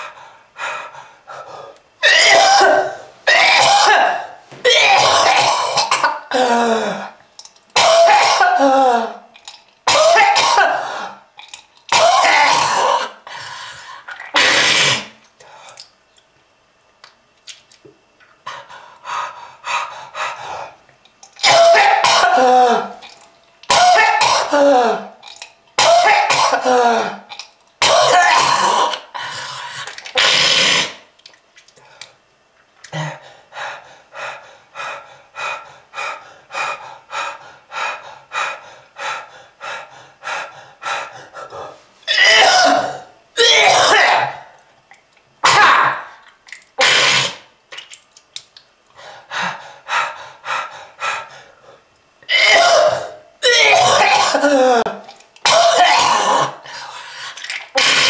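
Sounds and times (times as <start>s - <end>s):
person coughing heavily: 2.0s - 7.1s, 7.8s - 9.2s, 9.9s - 11.1s, 11.9s - 13.2s, 21.4s - 23.0s, 23.7s - 25.1s, 25.8s - 27.2s, 27.8s - 29.1s, 42.1s - 44.5s, 52.3s - 56.6s.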